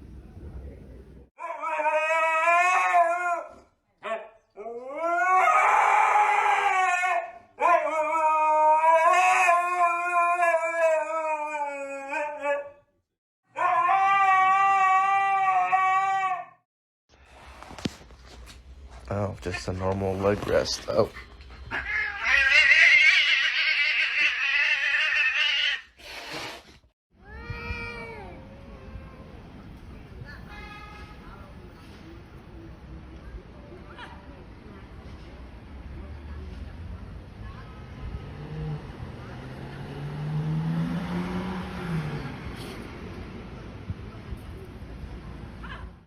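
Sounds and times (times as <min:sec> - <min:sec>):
cat yowling: 0:01.4 - 0:03.6, 0:04.6 - 0:12.7, 0:13.6 - 0:16.6, 0:21.7 - 0:25.9, 0:27.2 - 0:28.4
pet howling: 0:01.4 - 0:12.8, 0:13.5 - 0:16.6, 0:21.7 - 0:25.8.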